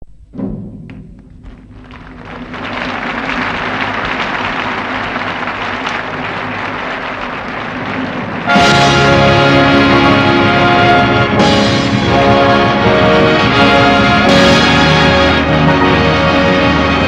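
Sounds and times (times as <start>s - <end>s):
audience applauding: 1.4s - 11.4s
orchestra playing loudly: 2.7s - 17.0s.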